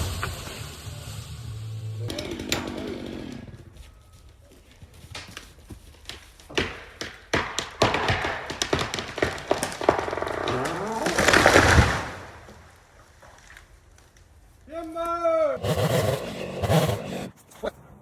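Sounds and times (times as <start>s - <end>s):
chainsaw revving with whine: 0.0s - 3.8s
chainsaw running: 0.0s - 3.9s
sharp cracks and knocks: 4.9s - 15.2s.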